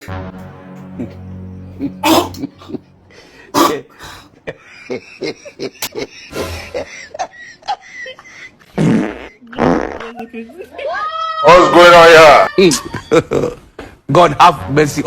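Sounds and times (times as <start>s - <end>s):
man clearing his throat: 1.8s - 2.8s, 3.5s - 4.3s
man coughing: 1.8s - 2.9s, 3.5s - 4.3s.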